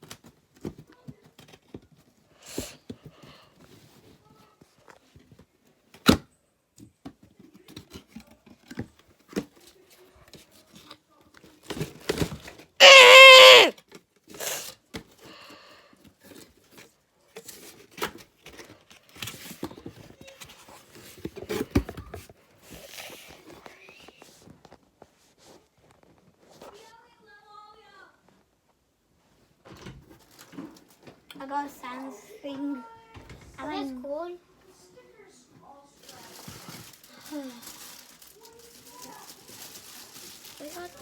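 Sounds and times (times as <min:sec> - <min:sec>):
loud screech: 0:12.8 - 0:13.7.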